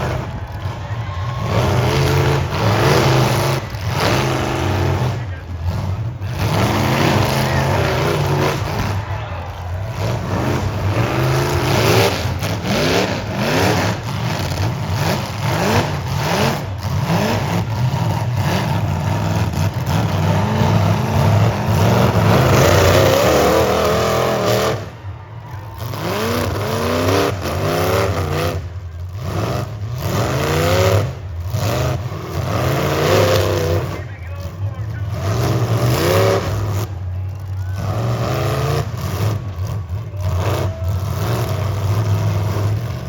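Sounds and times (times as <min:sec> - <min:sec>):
car engines revving: 0:00.0 - 0:43.0.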